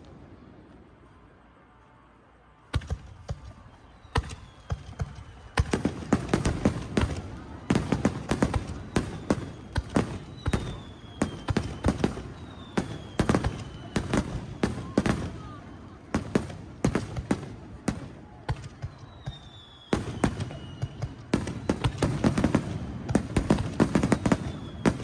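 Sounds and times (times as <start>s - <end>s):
fireworks bangs: 2.7s - 25.0s
falling firework whistles: 2.8s - 16.0s, 18.5s - 25.0s.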